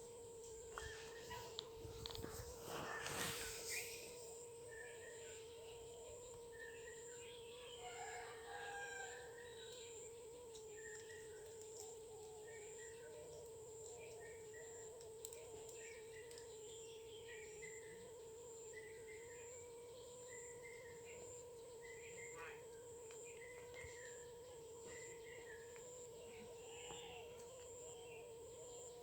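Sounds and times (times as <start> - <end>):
steady background hum: 0.0 - 29.0.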